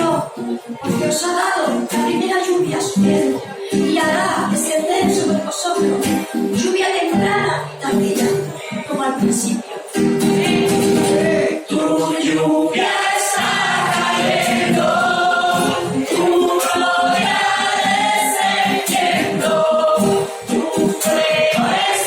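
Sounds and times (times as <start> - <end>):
congregation singing a worship song: 9.7 - 22.0.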